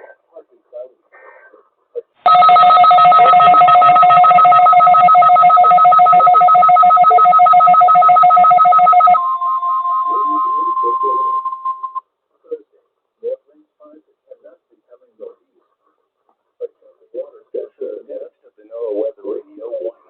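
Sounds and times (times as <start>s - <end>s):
single steady alarm tone: 2.3s - 12.0s
two-pitch weather alarm: 2.3s - 12.0s.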